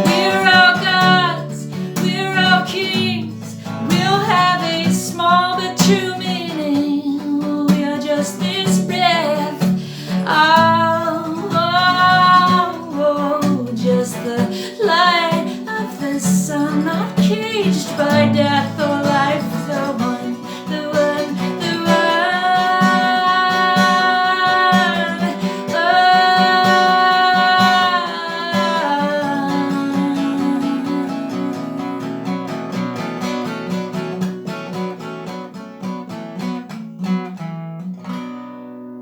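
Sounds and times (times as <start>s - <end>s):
acoustic guitar strumming: 0.0s - 39.0s
person singing long notes: 10.3s - 13.7s, 18.0s - 33.5s.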